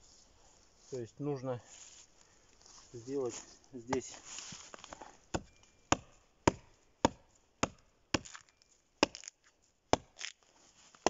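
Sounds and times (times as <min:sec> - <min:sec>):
axe chopping into log: 0:05.3 - 0:09.3, 0:09.9 - 0:10.4.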